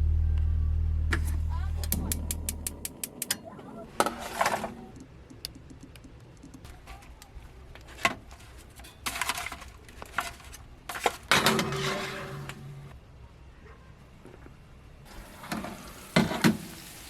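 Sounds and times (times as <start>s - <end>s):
pots and pans clinking: 15.4s - 16.8s.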